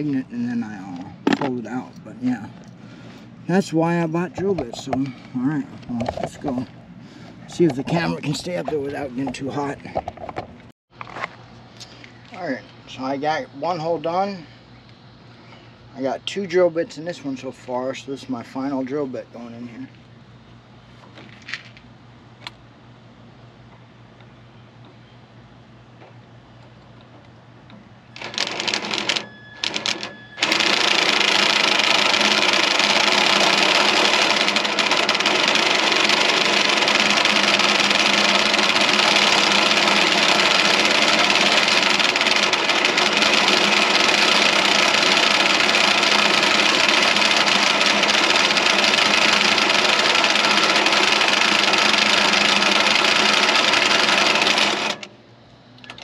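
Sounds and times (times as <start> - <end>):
power drill boring through steel: 29.9 - 55.1.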